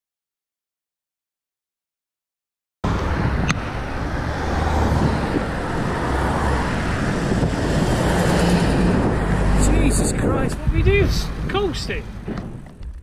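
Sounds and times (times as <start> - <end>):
road and tyre noise: 2.8 - 13.0
wind buffeting microphone: 2.8 - 13.0.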